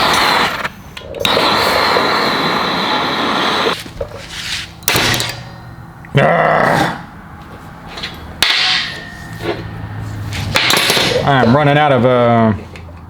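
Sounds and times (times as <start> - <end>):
blowtorch flame hissing: 0.0 - 4.7.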